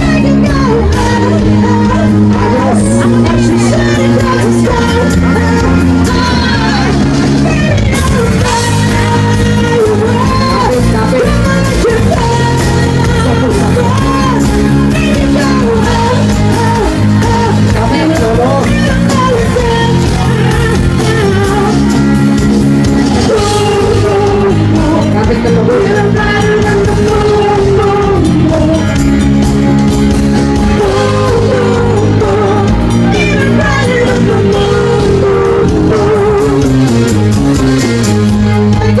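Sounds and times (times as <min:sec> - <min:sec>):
person singing long gliding notes: 0:00.0 - 0:22.4, 0:23.1 - 0:29.1, 0:30.6 - 0:37.2
instrumental backing: 0:00.0 - 0:39.0.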